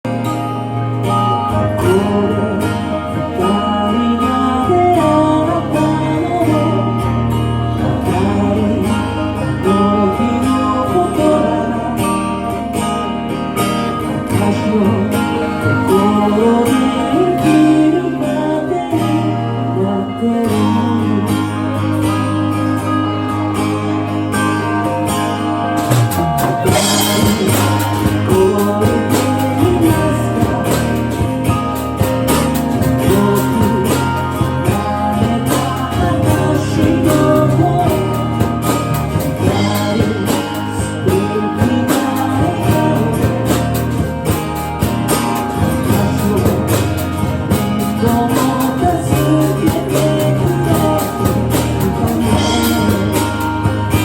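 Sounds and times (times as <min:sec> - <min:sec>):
band music led by guitar: 0:00.0 - 0:54.0
sustained bass notes: 0:00.0 - 0:54.0.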